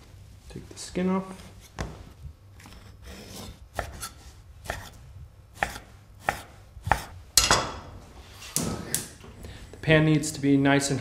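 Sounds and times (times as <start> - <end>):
knife chopping: 2.6 - 7.7.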